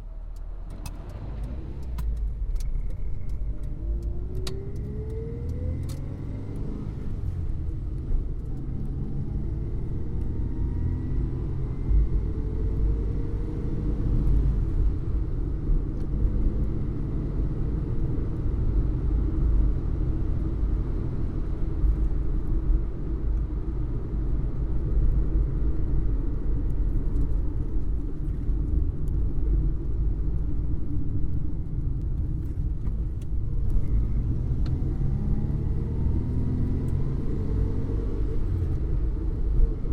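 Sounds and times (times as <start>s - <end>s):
car engine accelerating: 0.0s - 22.1s, 31.7s - 39.9s
road noise: 0.0s - 39.9s.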